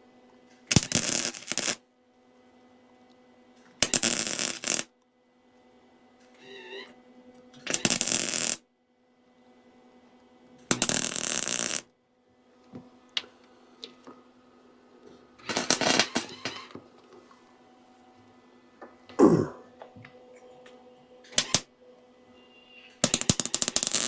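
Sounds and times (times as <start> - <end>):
welder arc crackling: 0.7 - 1.8, 3.8 - 4.9, 7.6 - 8.6, 10.7 - 11.9, 15.4 - 16.8, 21.3 - 21.7, 23.0 - 24.0.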